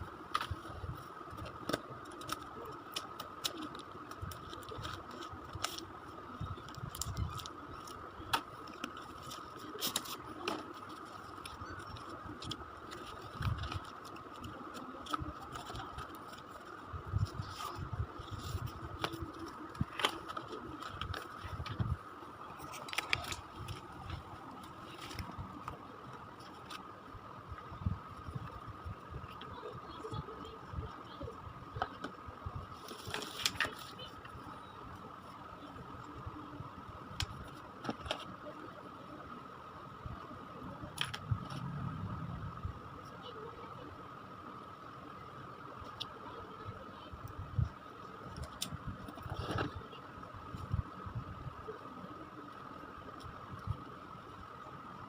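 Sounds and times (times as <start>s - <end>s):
objects being handled and unpacked: 0.3s - 26.9s.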